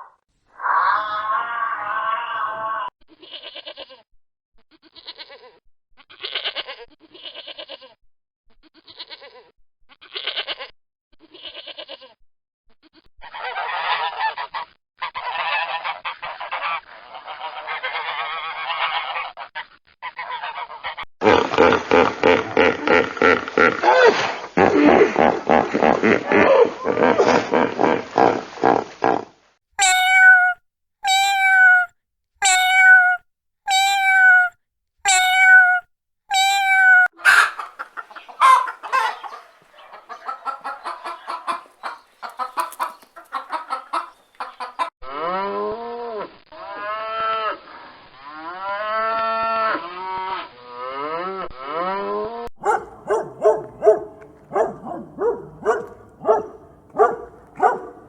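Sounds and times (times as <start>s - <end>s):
farm animal calls: 29.8s - 34.5s, 35.1s - 44.9s, 52.6s - 58.0s
chicken clucking: 36.8s - 44.9s, 52.6s - 58.0s.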